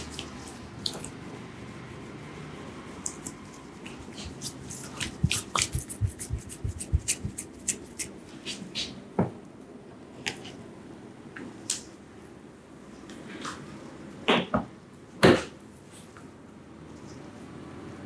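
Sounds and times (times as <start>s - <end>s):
hands slapping skin: 4.3s - 8.1s.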